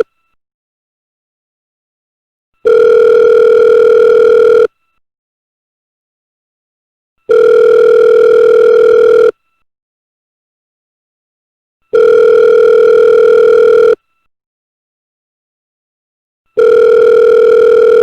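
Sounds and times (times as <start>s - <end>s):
electronic telephone ringing: 2.6s - 4.7s, 7.3s - 9.3s, 11.9s - 14.0s, 16.6s - 18.0s.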